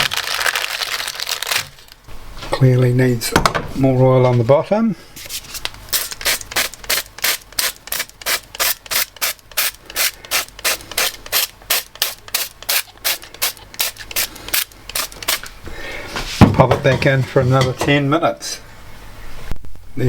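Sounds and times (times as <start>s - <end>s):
spray bottle hissing bursts: 5.9s - 15.5s.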